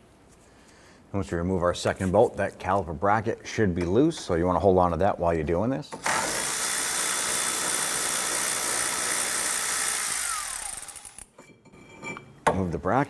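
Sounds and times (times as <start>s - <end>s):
power tool motor running: 6.0s - 11.3s.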